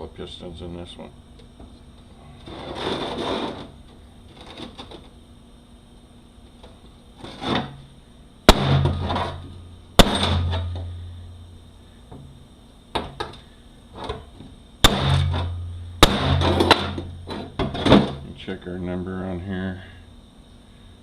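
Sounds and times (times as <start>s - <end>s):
metal-on-metal bangs: 8.5s - 11.1s, 14.8s - 18.2s.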